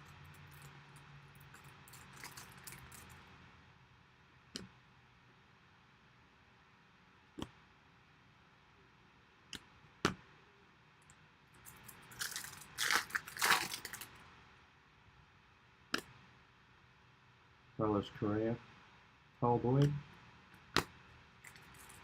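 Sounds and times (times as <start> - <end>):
card pack wrapper tearing: 1.9 - 3.1, 11.7 - 14.1.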